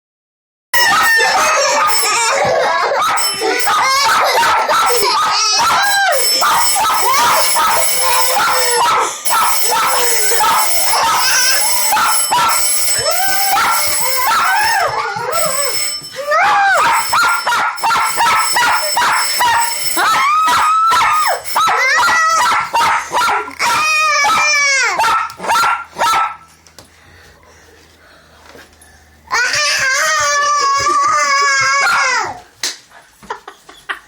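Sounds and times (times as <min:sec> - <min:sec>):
dog howling and whining: 0:00.8 - 0:26.2.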